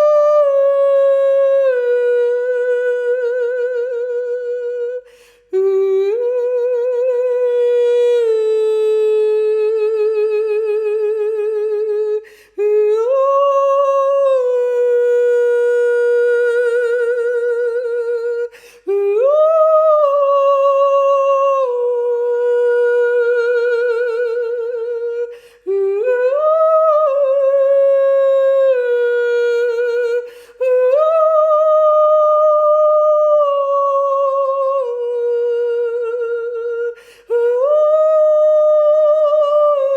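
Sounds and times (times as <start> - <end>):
high voice singing wordless tones: 0.0 - 39.9
singer breathing: 5.0 - 5.5, 12.2 - 12.6, 18.5 - 18.9, 25.3 - 25.7, 30.2 - 30.6, 37.0 - 37.3.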